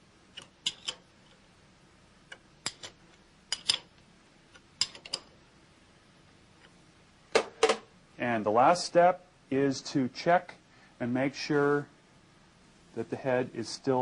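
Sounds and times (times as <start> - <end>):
wrench metallic clicks: 0.3 - 1.4, 2.3 - 3.9, 4.5 - 5.3.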